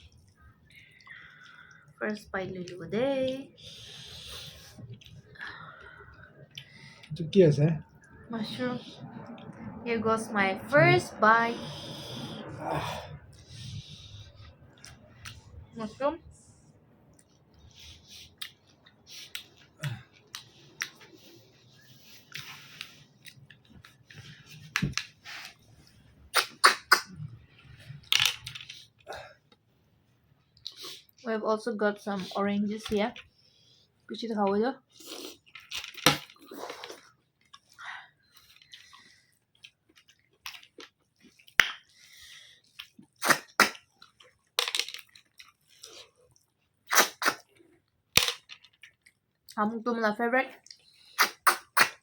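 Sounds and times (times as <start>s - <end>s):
person chewing: 0.0s - 2.0s, 3.6s - 7.2s, 17.1s - 29.5s, 30.5s - 31.2s, 34.9s - 49.6s
mouth clicks: 26.3s - 27.3s, 51.2s - 52.0s
person chewing crunchy food: 34.9s - 49.6s.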